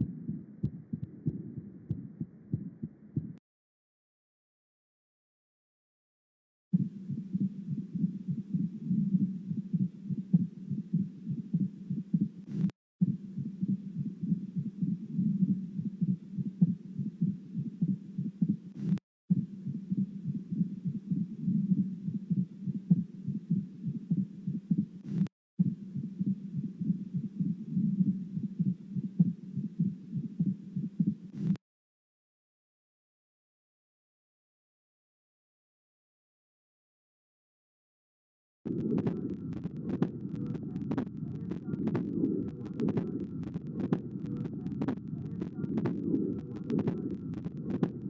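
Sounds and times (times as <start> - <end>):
low heartbeats: 0.0 - 3.4, 6.8 - 31.6, 38.7 - 48.0
steady low sound: 38.7 - 48.0.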